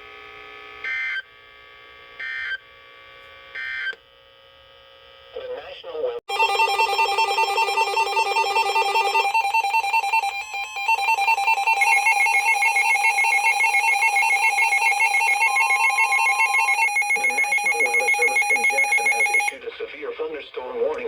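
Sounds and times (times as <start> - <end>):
electronic alert tone beeping: 6.3 - 19.5.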